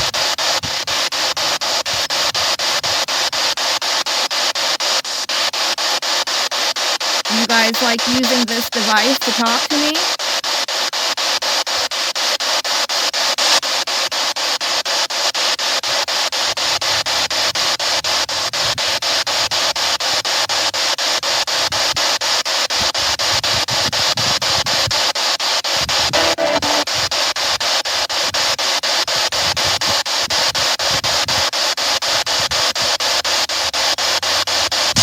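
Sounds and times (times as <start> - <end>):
radio static chopping rhythmically: 7.3 - 10.0, 26.2 - 27.1.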